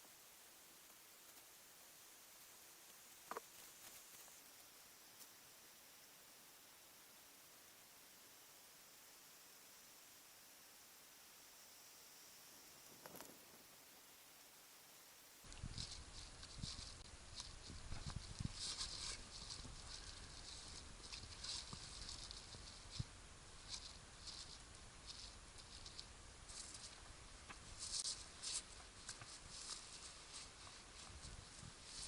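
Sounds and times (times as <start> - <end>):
light crackling and rustling: 0.0 - 5.4, 12.8 - 13.8, 15.4 - 32.0.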